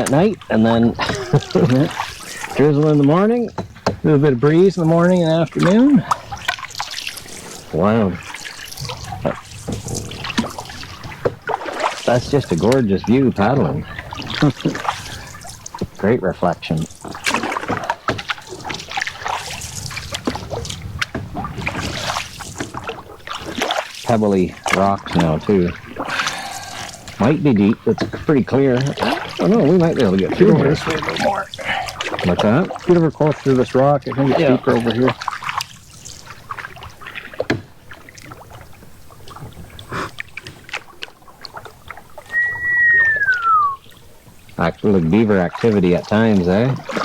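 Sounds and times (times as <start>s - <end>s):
paddle strokes in water: 0.0s - 47.0s
trickling drips: 0.0s - 47.0s
whistle-like note sliding down: 42.3s - 43.8s.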